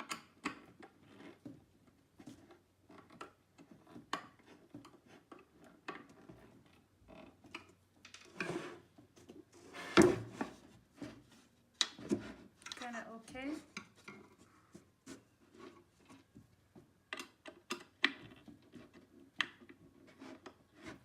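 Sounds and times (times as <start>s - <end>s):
wood panel scraping: 8.2s - 11.4s.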